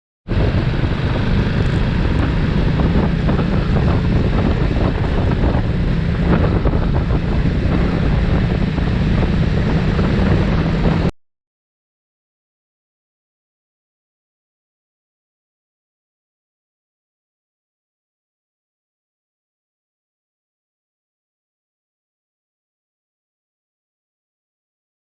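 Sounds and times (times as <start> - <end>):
wind buffeting microphone: 0.3 - 11.1.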